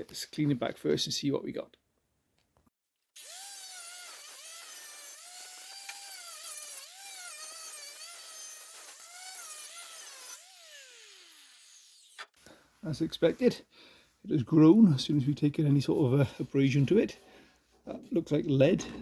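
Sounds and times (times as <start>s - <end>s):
rotary abrasive tool whining on metal: 3.2s - 12.3s
tool winding down: 3.2s - 12.4s.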